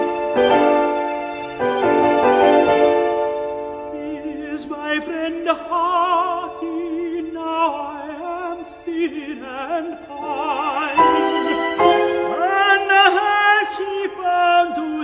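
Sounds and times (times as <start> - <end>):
classically trained voice singing: 3.9 - 15.0.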